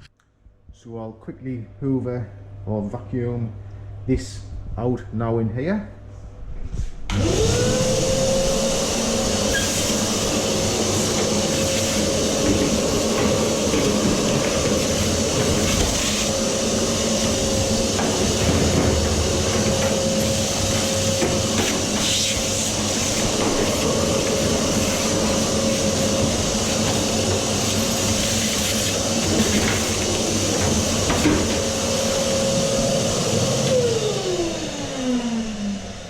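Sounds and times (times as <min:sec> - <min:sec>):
vacuum cleaner running: 0:07.1 - 0:36.0.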